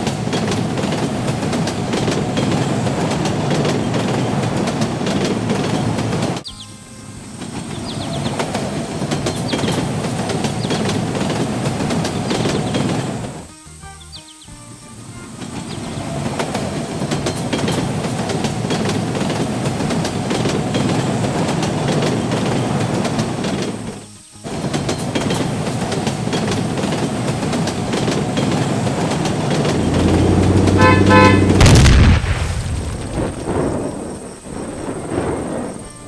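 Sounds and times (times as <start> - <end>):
heavy machinery clattering: 0.0 - 6.5, 15.4 - 33.6
horn blast: 28.8 - 32.3.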